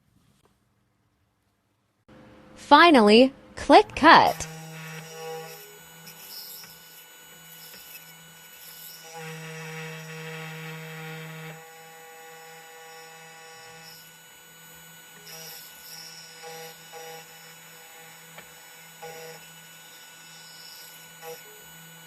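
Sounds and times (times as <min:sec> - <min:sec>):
key cutting machine whine: 0:04.0 - 0:22.0.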